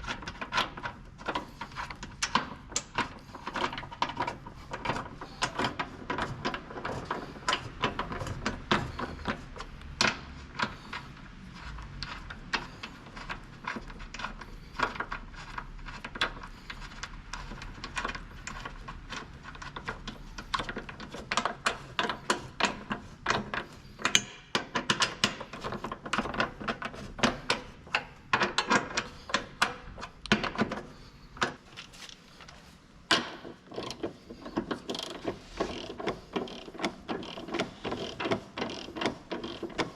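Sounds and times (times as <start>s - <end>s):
hand tools clicking on metal: 0.0s - 31.9s.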